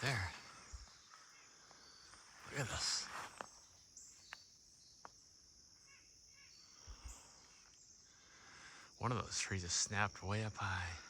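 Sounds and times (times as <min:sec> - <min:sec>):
bird chirps: 0:00.0 - 0:05.1.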